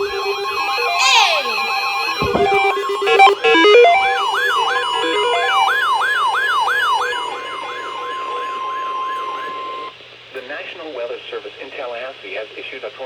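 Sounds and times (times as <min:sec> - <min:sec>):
stepped electronic beeps: 0:00.0 - 0:05.6
siren-like whoop: 0:00.0 - 0:09.9
steady weather radio warning tone: 0:00.0 - 0:09.9.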